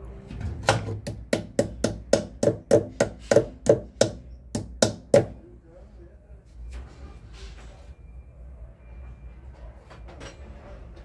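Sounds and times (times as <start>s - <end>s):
hammer tapping metal: 0.8s - 5.4s.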